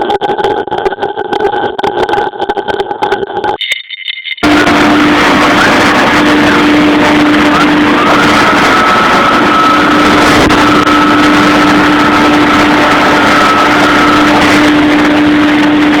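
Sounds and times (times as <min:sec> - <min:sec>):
cnc router running: 0:00.0 - 0:16.0
high-pitched tone: 0:03.4 - 0:16.0.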